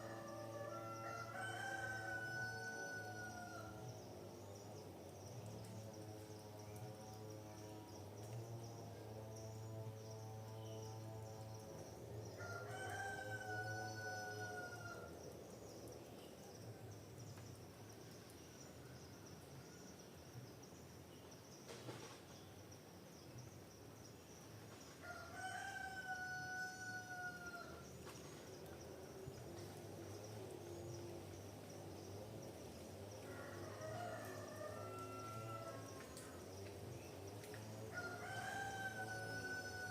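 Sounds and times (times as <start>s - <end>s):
rooster crowing: 0.0s - 3.8s, 12.4s - 15.1s, 25.0s - 27.8s, 33.2s - 36.3s, 37.9s - 39.9s.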